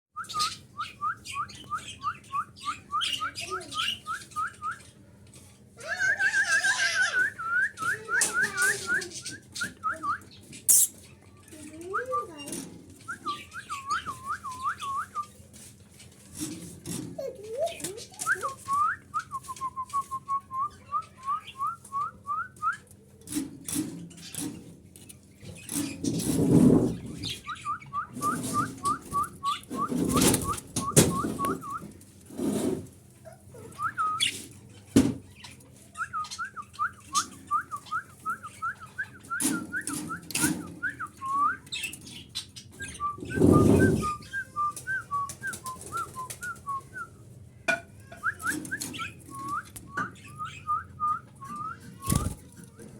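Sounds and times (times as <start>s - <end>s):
rustling or flapping: 25.5s - 33.0s, 43.0s - 47.1s, 51.6s - 52.9s.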